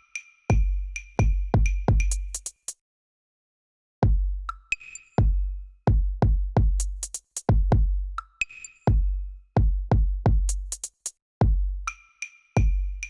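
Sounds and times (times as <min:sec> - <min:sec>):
drum machine beat: 0:00.5 - 0:02.7, 0:05.2 - 0:08.0, 0:08.9 - 0:11.7.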